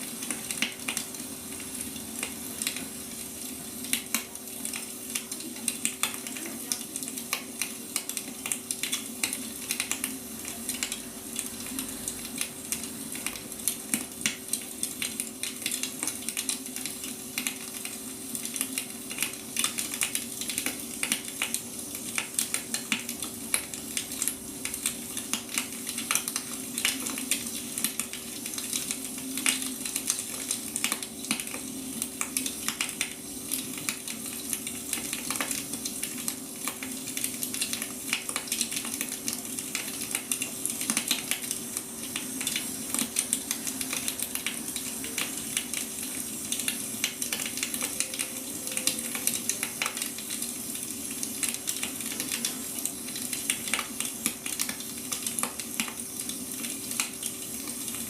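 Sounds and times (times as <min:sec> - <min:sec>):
faint steady hum: 0:00.0 - 0:58.0
wood fire crackling: 0:00.0 - 0:58.0.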